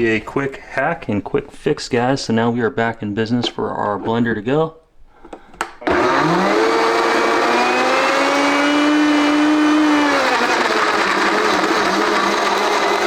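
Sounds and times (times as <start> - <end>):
clicks: 5.2 - 6.0
blender motor running: 5.8 - 13.0.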